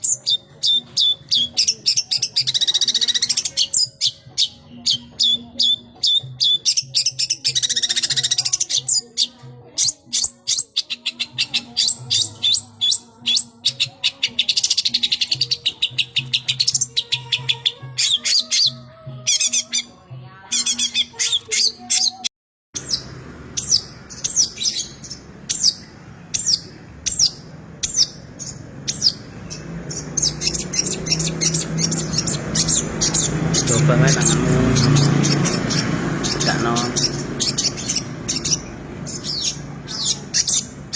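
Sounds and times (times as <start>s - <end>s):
bird singing sharp chirps: 20.5s - 40.9s.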